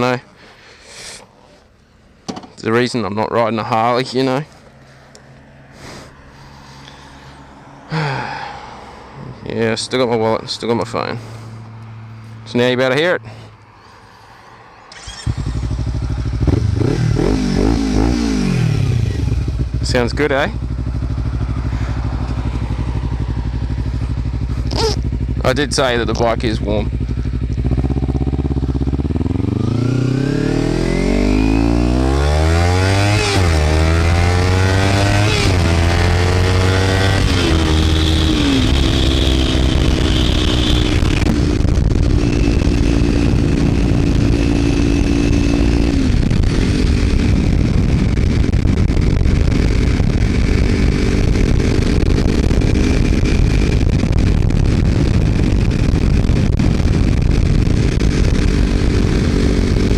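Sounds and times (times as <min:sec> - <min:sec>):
motorcycle engine accelerating: 0:14.8 - 0:59.9.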